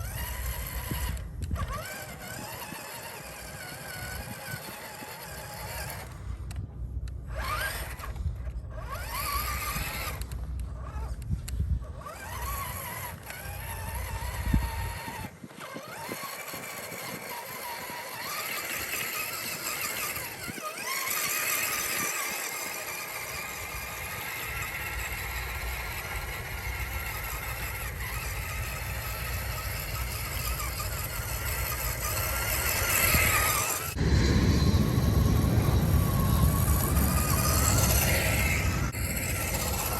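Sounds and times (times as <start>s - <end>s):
small electric motor whine: 0.0s - 39.9s
low rumble: 32.6s - 39.9s.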